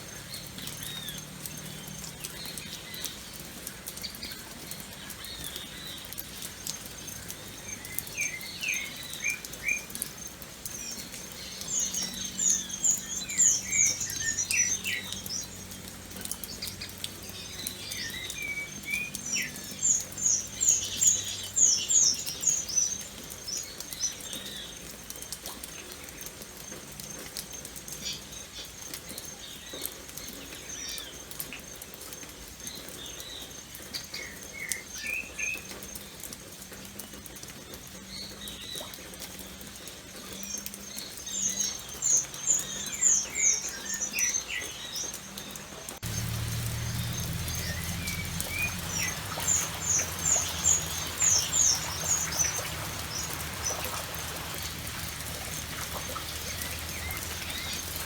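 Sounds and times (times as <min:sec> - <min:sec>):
birds chirping: 0:00.0 - 0:24.8, 0:39.8 - 0:58.0
raindrops pattering: 0:00.0 - 0:58.0.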